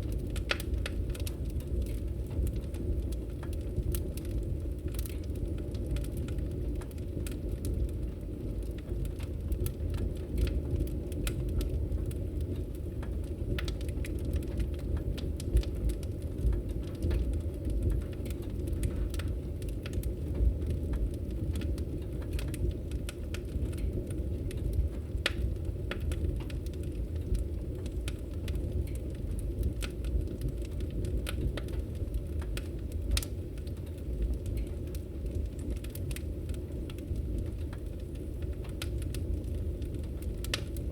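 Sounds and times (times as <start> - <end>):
fire crackling and popping: 0.0 - 40.9.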